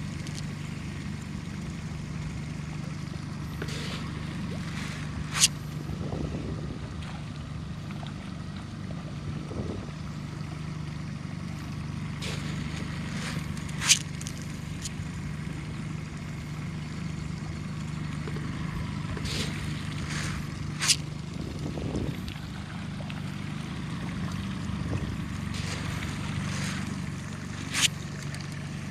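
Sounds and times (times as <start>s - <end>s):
boat motor humming: 0.0s - 28.9s
sharp water splashes: 2.5s - 6.0s, 11.6s - 28.9s.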